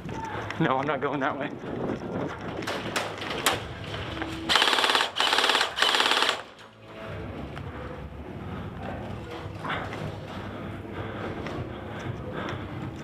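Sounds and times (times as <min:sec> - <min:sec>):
airsoft gun full-auto bursts: 0:04.5 - 0:06.6.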